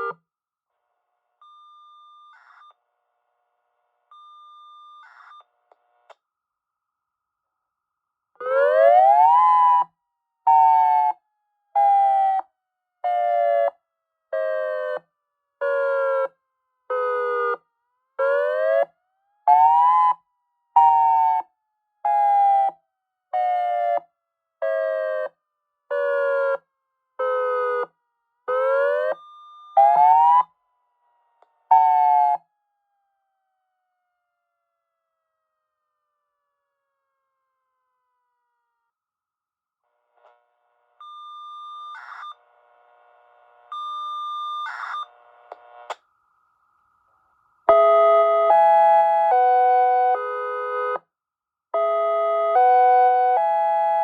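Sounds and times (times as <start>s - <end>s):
pulsed warning siren wail: 8.4s - 9.9s, 11.8s - 12.4s, 19.5s - 20.2s, 20.8s - 21.4s, 25.9s - 26.6s, 27.2s - 27.8s, 28.5s - 29.2s, 29.8s - 30.4s, 31.7s - 32.4s, 47.7s - 51.0s, 51.8s - 54.0s.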